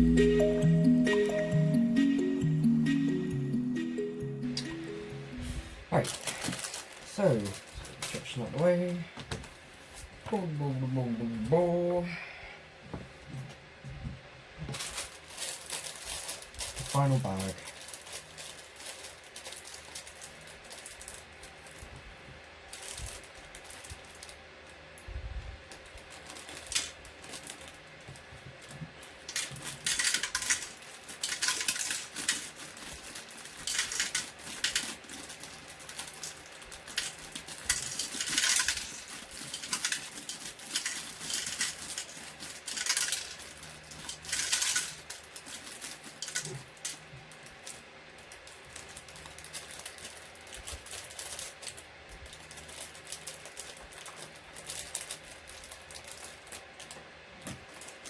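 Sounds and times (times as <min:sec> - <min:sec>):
plastic pieces clicking and clattering: 0:25.7 - 0:27.8, 0:28.6 - 0:58.0.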